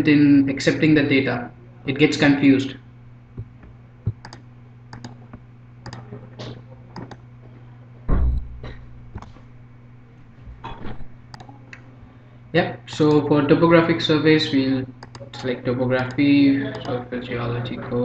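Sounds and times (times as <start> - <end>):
low electrical hum: 0.0 - 18.0
keyboard keypresses: 3.4 - 6.1, 6.9 - 7.2, 11.3 - 11.8, 15.0 - 17.0
low thump: 8.1 - 8.7.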